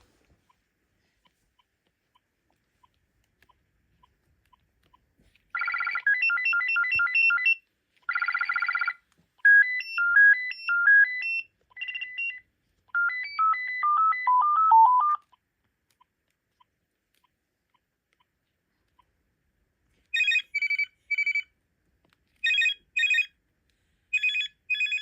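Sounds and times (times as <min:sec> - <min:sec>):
cordless phone ringtones: 0:05.5 - 0:15.2, 0:20.1 - 0:21.6, 0:22.4 - 0:23.4, 0:24.1 - 0:25.0.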